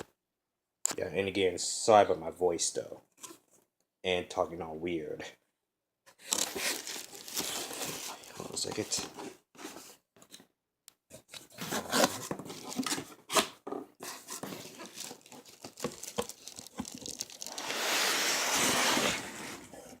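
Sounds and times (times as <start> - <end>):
packaging crinkling and tearing: 6.2 - 8.8, 14.2 - 19.2.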